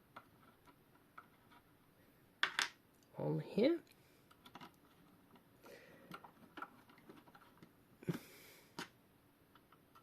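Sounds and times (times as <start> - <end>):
small metal parts clicking and tapping: 4.3 - 5.4.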